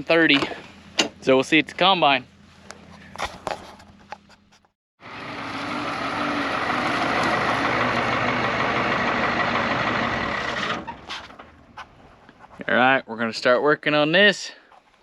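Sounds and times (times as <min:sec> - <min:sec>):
large diesel engine running: 0:05.0 - 0:11.6.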